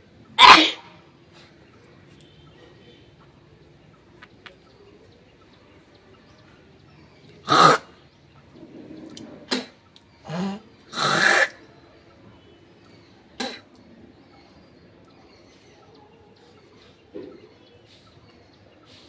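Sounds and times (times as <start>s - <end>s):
person sneezing: 0.4s - 0.8s.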